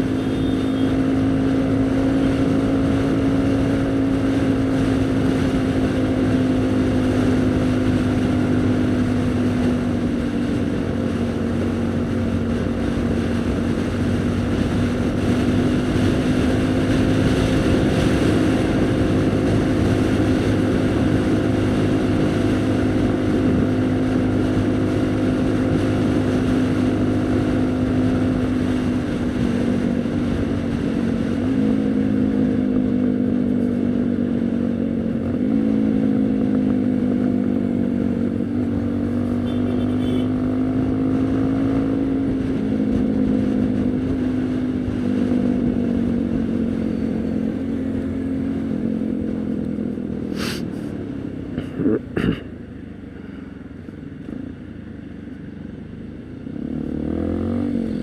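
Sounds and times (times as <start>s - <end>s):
motorcycle engine running: 0.0s - 58.0s
wind rushing over microphone: 1.0s - 39.3s.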